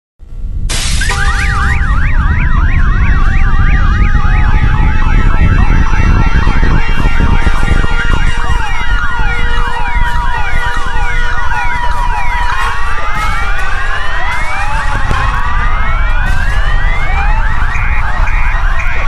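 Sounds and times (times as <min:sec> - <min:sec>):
deep continuous rumble: 0:00.2 - 0:19.0
siren yelping: 0:00.9 - 0:19.0
sirens wailing: 0:00.9 - 0:19.0.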